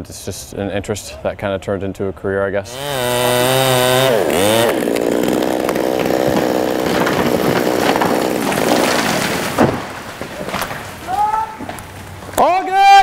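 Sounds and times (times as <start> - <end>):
chainsaw cutting wood: 2.7 - 10.9
sharp wood crack: 2.7 - 12.5.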